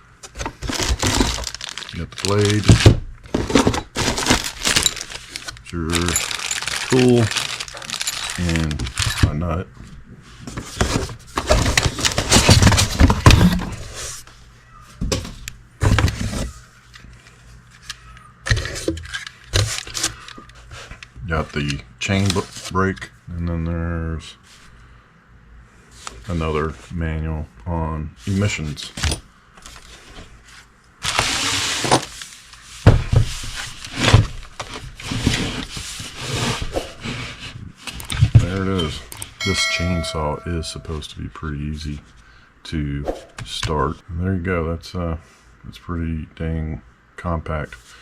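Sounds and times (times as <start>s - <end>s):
small parts knocking and clattering: 0.2s - 9.4s
packaging rustling: 0.3s - 9.4s.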